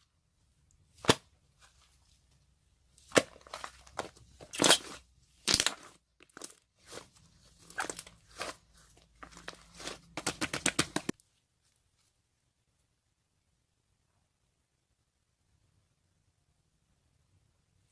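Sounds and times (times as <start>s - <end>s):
slime popping and crackling: 4.5s - 7.0s.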